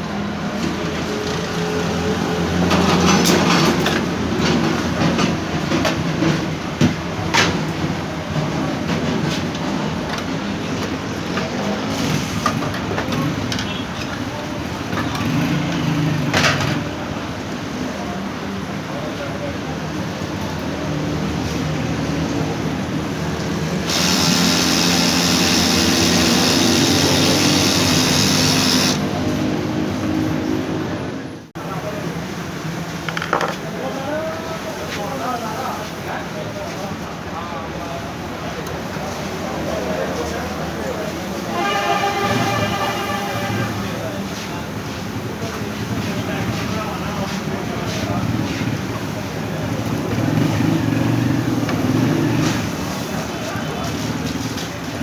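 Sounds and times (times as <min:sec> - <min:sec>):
copier humming: 0:23.2 - 0:29.6.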